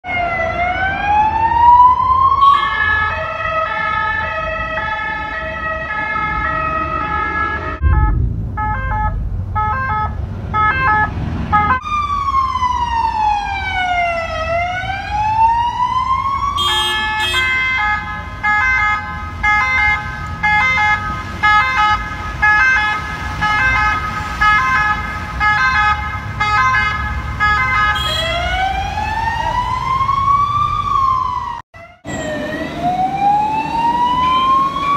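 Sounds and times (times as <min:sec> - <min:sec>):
ambulance siren: 0:00.0 - 0:34.9
low rumble: 0:07.7 - 0:11.6.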